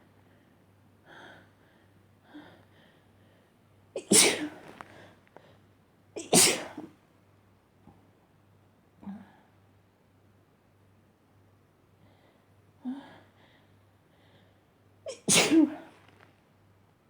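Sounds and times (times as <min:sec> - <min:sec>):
person sneezing: 0:04.0 - 0:04.6, 0:06.2 - 0:06.8, 0:15.1 - 0:15.8
faint breaths: 0:12.0 - 0:14.7.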